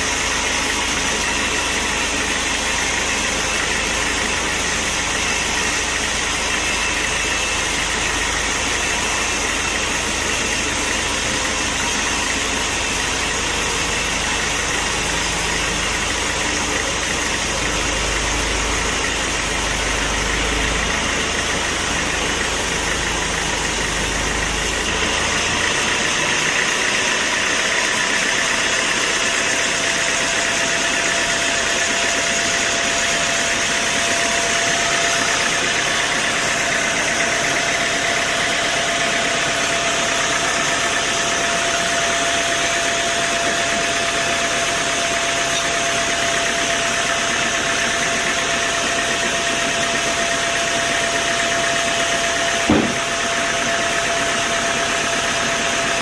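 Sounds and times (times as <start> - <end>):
sawmill machinery drone: 0.0 - 56.0.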